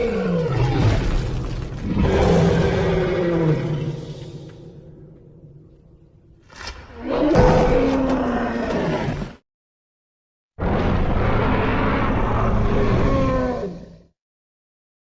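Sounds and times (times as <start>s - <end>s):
creature roars: 0.0s - 4.7s, 6.9s - 9.4s, 11.0s - 14.1s.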